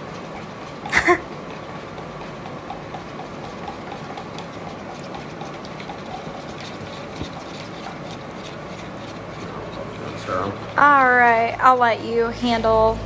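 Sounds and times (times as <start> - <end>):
stir stick scraping container: 2.5 - 11.4.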